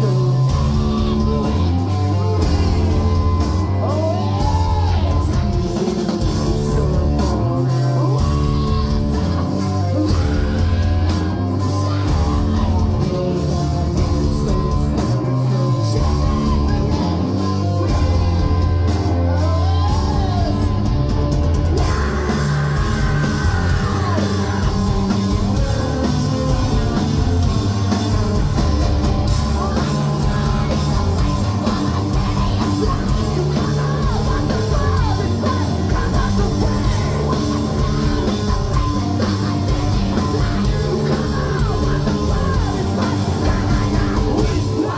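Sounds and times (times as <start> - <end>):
live rock band playing: 0.0 - 44.9
person screaming vocals: 21.8 - 25.0.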